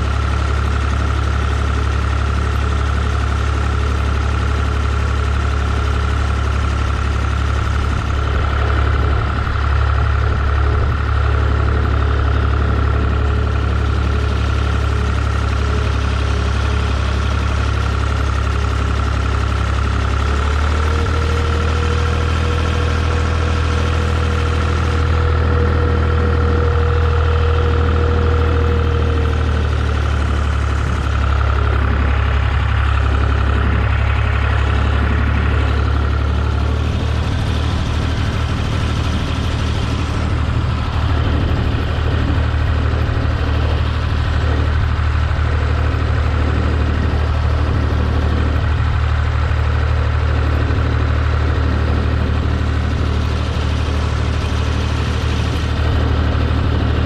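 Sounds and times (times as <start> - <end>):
tractor engine running: 0.0 - 57.0.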